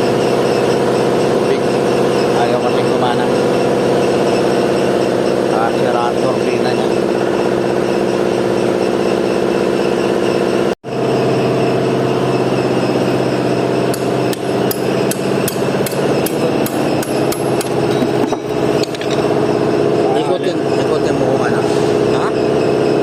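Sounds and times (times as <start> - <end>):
truck engine running: 0.0 - 23.0
sharp metallic taps: 13.9 - 19.2.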